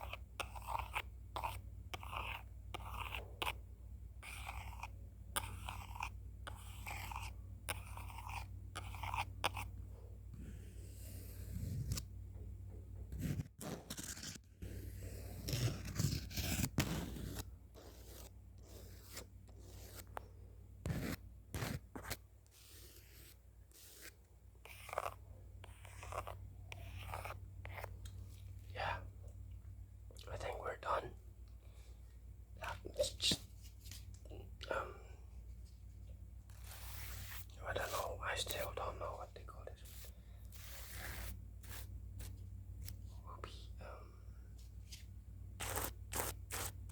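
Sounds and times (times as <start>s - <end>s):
drawing tool scraping strokes: 4.2s - 9.7s, 13.2s - 20.1s, 20.8s - 27.9s, 36.5s - 38.7s, 39.8s - 42.4s, 45.6s - 46.9s.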